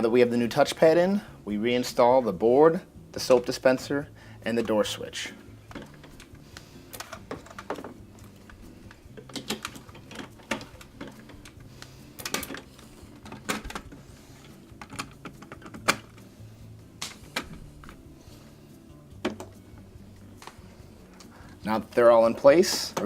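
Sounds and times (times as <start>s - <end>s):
plastic parts clicking and knocking: 5.7s - 6.3s, 6.9s - 16.3s, 17.0s - 18.0s, 19.2s - 19.6s, 22.3s - 23.0s.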